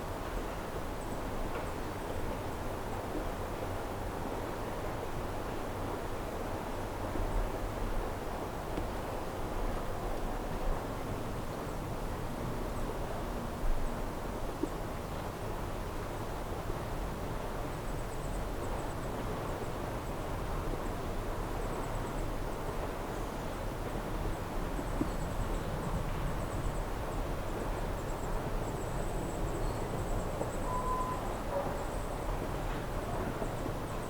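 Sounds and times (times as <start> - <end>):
faint high chirping: 30.5 - 32.1
whistled call: 30.6 - 31.4.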